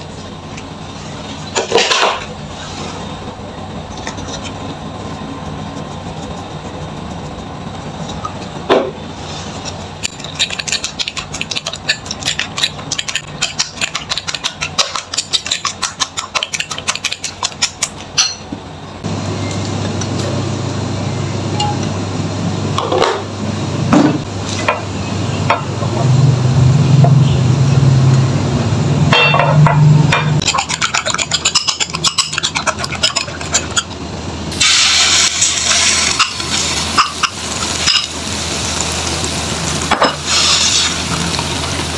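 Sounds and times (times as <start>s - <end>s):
hissing sizzle: 34.5s - 41.9s.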